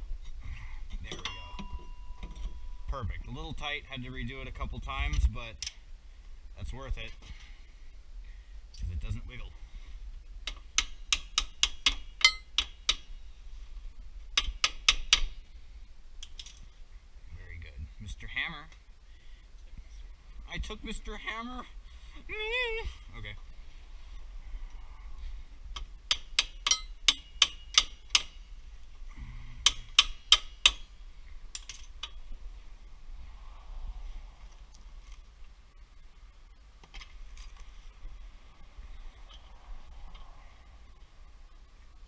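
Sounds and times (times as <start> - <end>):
hammer striking metal parts: 1.1 - 2.8, 10.5 - 13.1, 26.1 - 28.4
hand tool clicking on metal: 10.4 - 13.1, 14.4 - 15.3, 25.8 - 28.4, 29.6 - 30.9.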